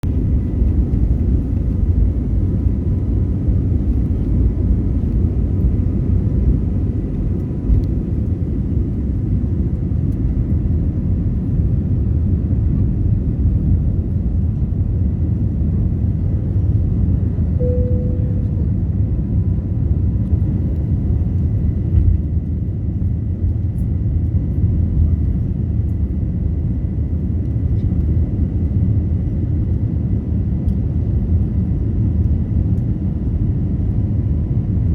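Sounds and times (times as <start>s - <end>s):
airliner engines rumbling: 0.0s - 34.9s
short tone: 17.6s - 19.1s
faint steady whine: 17.6s - 19.6s.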